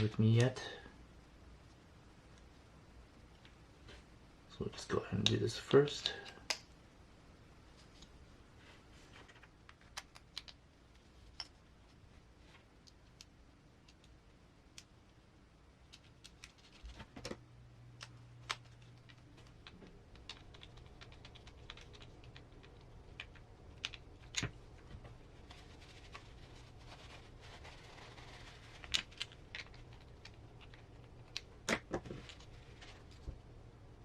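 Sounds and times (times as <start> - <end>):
small parts clicking and tapping: 9.6 - 11.7, 12.8 - 15.0, 15.8 - 26.3, 27.6 - 33.3.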